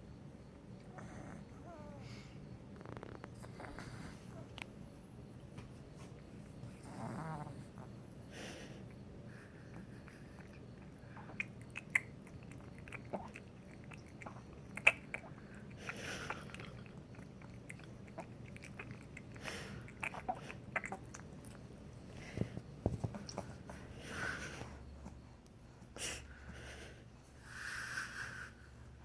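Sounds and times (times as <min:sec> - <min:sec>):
puppy snoring breaths: 0:00.9 - 0:04.6, 0:06.6 - 0:11.4, 0:22.1 - 0:29.0.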